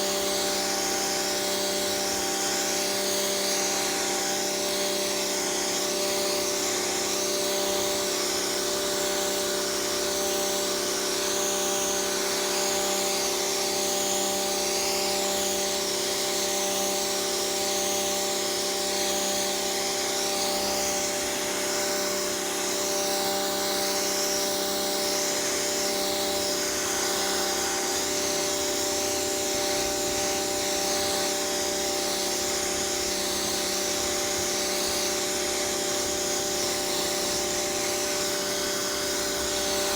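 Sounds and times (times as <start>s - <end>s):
pressure washer motor humming: 0.0s - 39.9s
water jet hissing on pavement: 20.2s - 39.9s.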